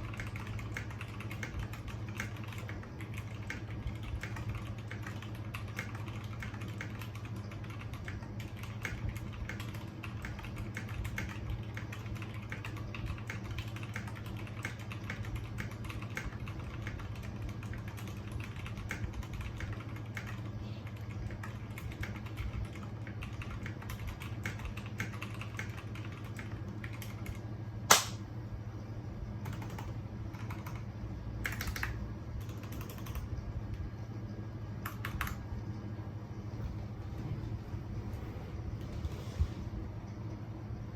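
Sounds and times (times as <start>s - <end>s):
mechanical keyboard typing: 0.0s - 28.2s, 29.4s - 30.8s, 31.4s - 33.3s.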